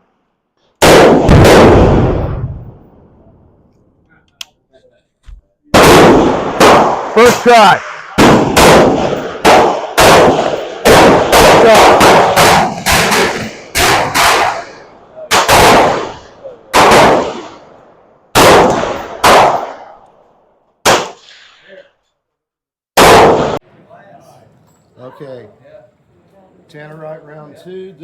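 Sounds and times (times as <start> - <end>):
rifle gunshots: 0.8 - 2.8, 5.7 - 20.0, 20.8 - 21.6, 23.0 - 23.6.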